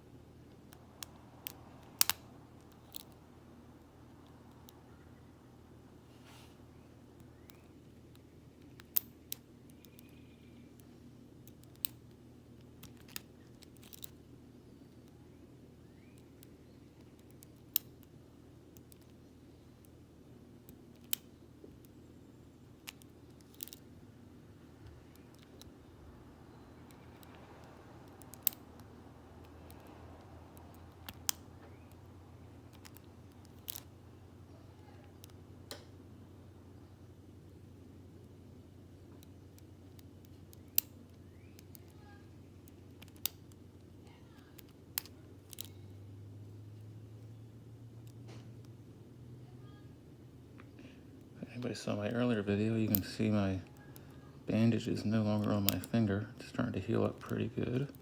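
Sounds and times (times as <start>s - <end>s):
steady low hum: 0.0s - 58.0s
lock pick metallic clicks: 0.7s - 3.2s, 7.3s - 10.2s, 10.8s - 12.1s, 12.7s - 14.2s, 16.0s - 18.1s, 20.7s - 22.0s, 22.8s - 23.8s, 26.8s - 32.1s, 32.7s - 33.9s, 42.6s - 43.6s, 44.6s - 45.8s, 52.8s - 54.1s, 55.4s - 56.0s
lock pick clicking in padlock: 1.0s - 3.2s, 12.8s - 14.2s, 22.8s - 23.8s, 28.0s - 28.8s, 32.7s - 33.9s.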